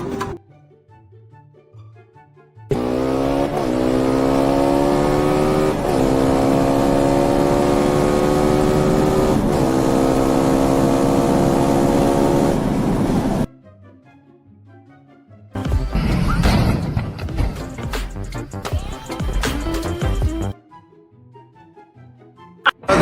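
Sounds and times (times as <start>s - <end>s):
car engine revving and accelerating: 2.7s - 13.5s.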